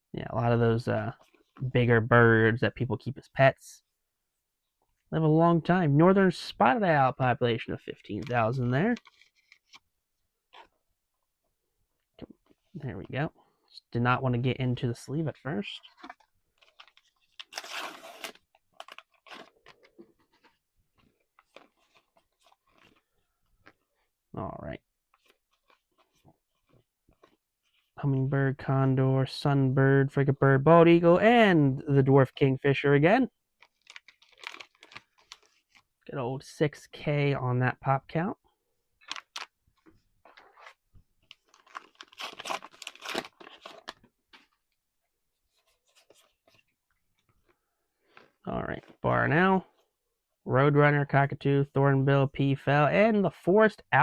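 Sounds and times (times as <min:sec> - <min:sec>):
wrapper tearing and crinkling: 0:16.0 - 0:20.0, 0:33.6 - 0:35.8, 0:39.0 - 0:39.5, 0:41.3 - 0:44.1.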